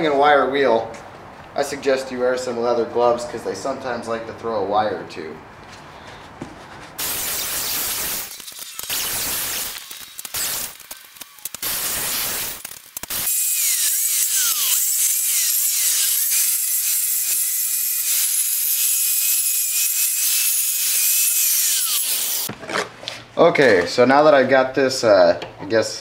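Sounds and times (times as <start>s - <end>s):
angle grinder motor whine: 7.1s - 22.5s
wire wheel grinding steel: 8.1s - 22.5s.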